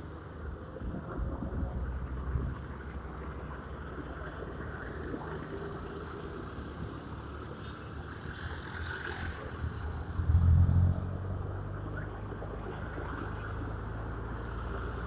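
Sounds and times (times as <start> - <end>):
road rumble: 0.0 - 15.0
wind noise on microphone: 0.7 - 2.7.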